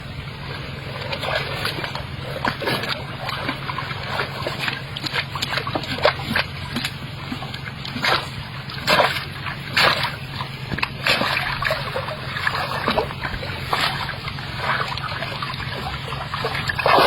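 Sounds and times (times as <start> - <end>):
steady low hum: 0.0 - 17.0
water splashing and sloshing: 0.0 - 17.0.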